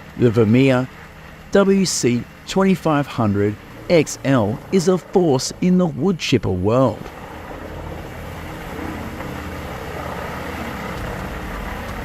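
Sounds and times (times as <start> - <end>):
wood chipper running: 0.0 - 12.0.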